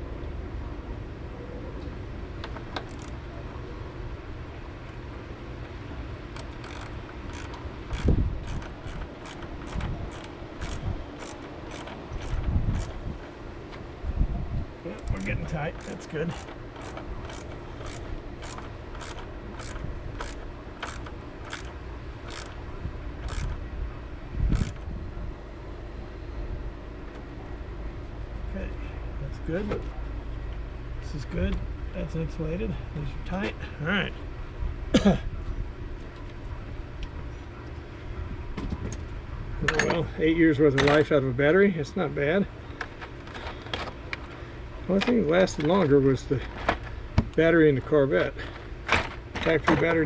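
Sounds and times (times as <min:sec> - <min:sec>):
hand tools clicking: 0:02.8 - 0:03.2, 0:06.4 - 0:13.0, 0:14.9 - 0:21.7, 0:22.3 - 0:22.6, 0:23.2 - 0:23.6.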